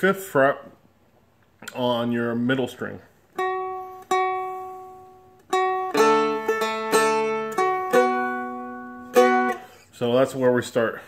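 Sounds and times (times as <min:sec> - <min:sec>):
dulcimer picked notes: 0:05.5 - 0:09.7.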